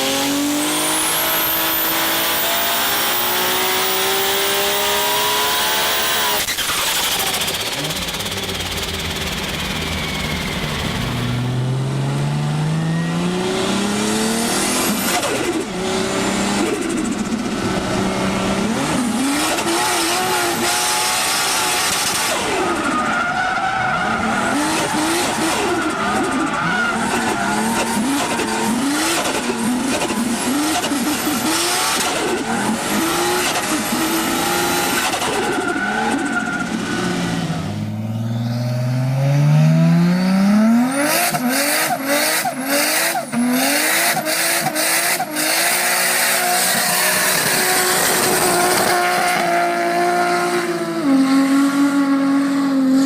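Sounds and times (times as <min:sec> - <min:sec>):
car engine revving hard: 0:00.0 - 0:23.0, 0:23.7 - 0:53.0
high steady squeal: 0:06.0 - 0:11.7.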